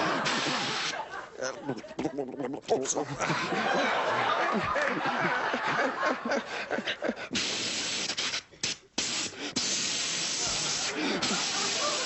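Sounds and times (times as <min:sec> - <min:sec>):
mouth spraying hiss: 0:00.0 - 0:01.0, 0:07.3 - 0:12.0
people laughing: 0:00.0 - 0:07.3, 0:10.4 - 0:12.0.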